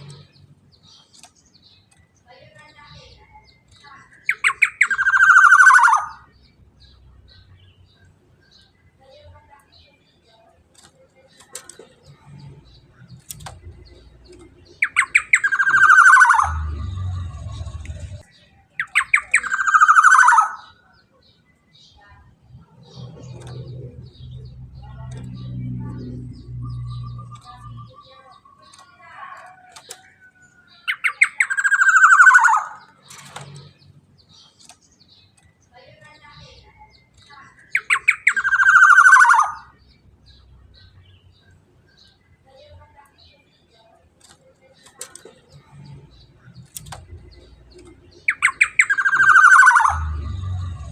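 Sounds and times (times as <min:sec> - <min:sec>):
harsh rapid rattling bird call: 0:00.0 - 0:06.4, 0:10.7 - 0:20.8, 0:22.8 - 0:39.8, 0:44.2 - 0:50.9
faint bird chirps: 0:00.0 - 0:50.9
bird giving harsh rasping calls: 0:14.8 - 0:18.1, 0:30.8 - 0:32.9, 0:37.5 - 0:39.8, 0:48.2 - 0:50.2.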